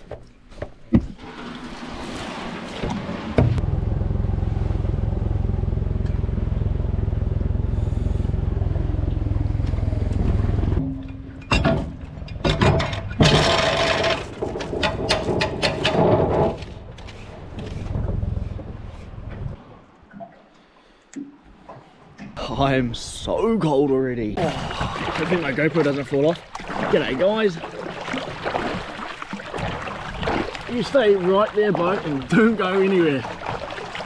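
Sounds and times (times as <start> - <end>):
outboard motor running: 3.2 - 11.4, 13.2 - 14.7
clattering rattles: 10.8 - 18.3.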